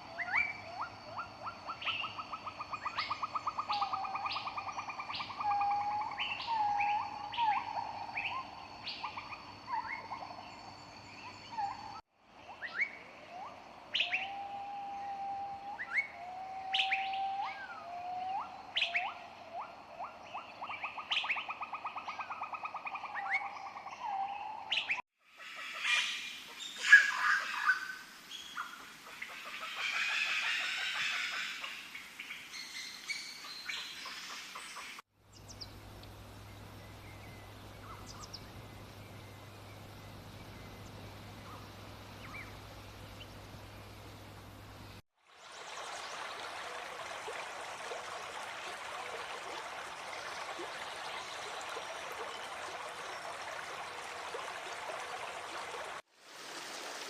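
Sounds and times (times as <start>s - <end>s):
harsh chorus of bird calls: 25.4s - 32.0s
birds calling: 25.6s - 45.0s.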